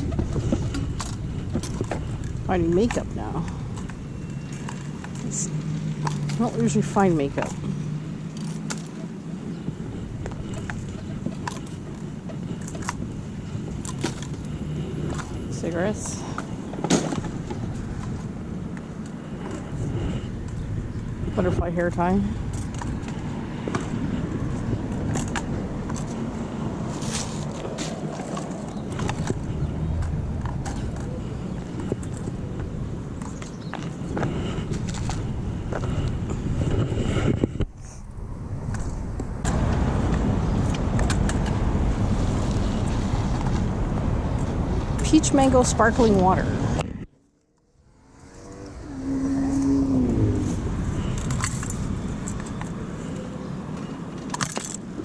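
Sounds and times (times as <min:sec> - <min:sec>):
cart rattling over pavement: 0:00.0 - 0:38.0
road rumble: 0:00.0 - 0:55.0
car driving by: 0:47.5 - 0:54.0.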